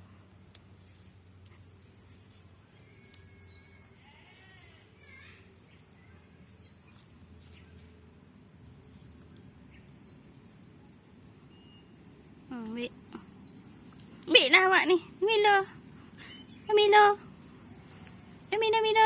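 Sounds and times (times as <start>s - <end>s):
small bird chirps: 9.0s - 14.9s, 16.2s - 18.9s.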